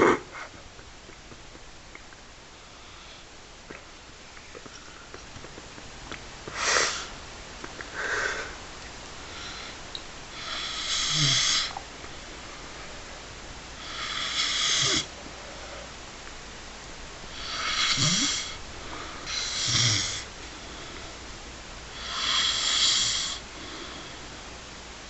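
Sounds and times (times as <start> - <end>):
person snoring: 10.4 - 11.7, 13.8 - 15.1, 17.3 - 20.3, 22.0 - 24.1.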